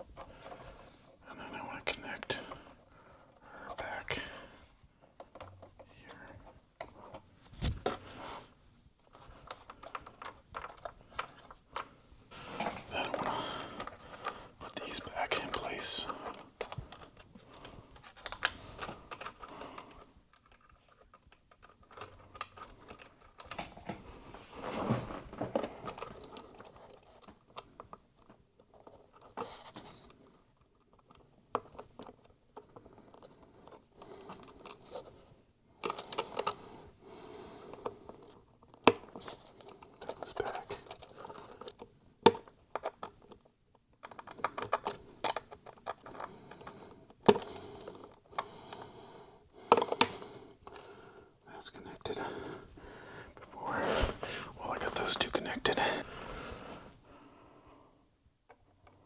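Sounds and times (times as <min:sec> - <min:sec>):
cables and connectors clicking: 0:16.1 - 0:24.0.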